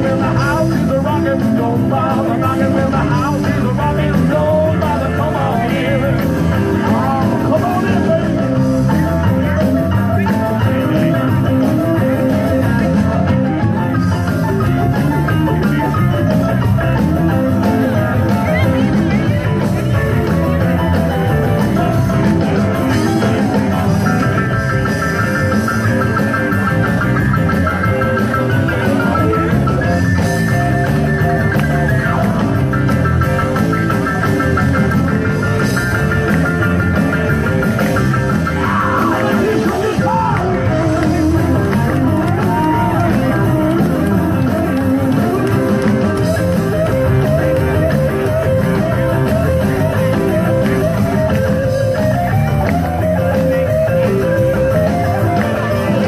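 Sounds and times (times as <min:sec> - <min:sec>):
person singing: 0:00.0 - 0:08.8, 0:38.5 - 0:47.4
drums: 0:00.0 - 0:56.0
electric guitar: 0:00.0 - 0:56.0
live rock music: 0:00.0 - 0:56.0.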